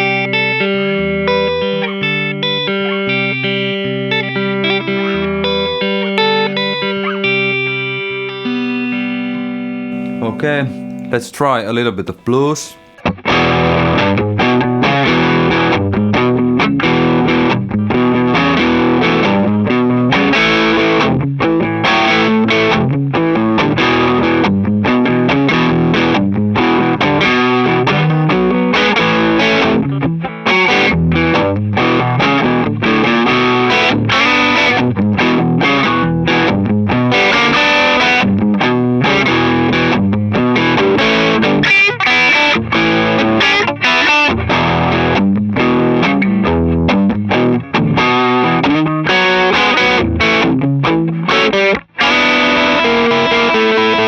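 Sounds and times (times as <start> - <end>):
blues electric guitar: 0.0 - 11.2, 12.1 - 54.0.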